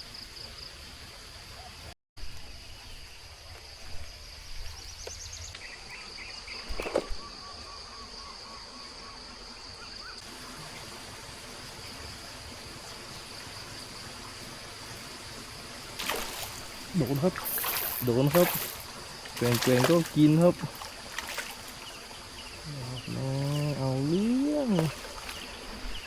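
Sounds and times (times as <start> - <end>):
insect buzz: 2.2 - 26.0
stream rushing: 10.3 - 26.0.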